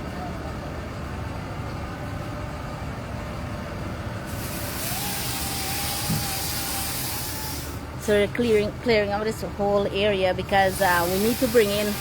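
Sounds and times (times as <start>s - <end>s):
engine low rumble: 0.0s - 12.0s
rushing hiss: 4.3s - 7.8s.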